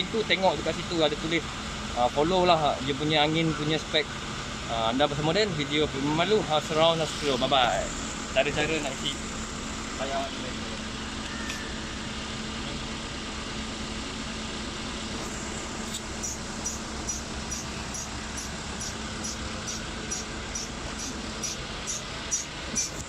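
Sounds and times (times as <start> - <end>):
mechanical hum: 6.2 - 23.0
rapid even ticking: 15.5 - 23.0.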